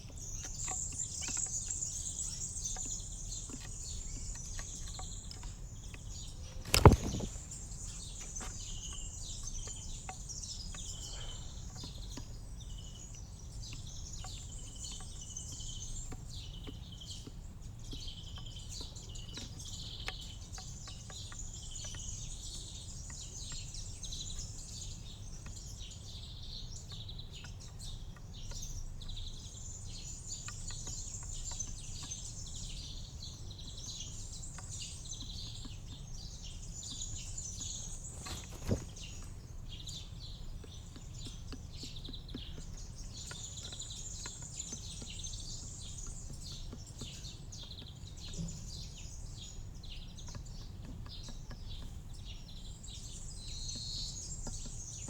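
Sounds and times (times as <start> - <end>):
small birds chirping: 0.0 - 55.0
sharp click: 6.5 - 7.7.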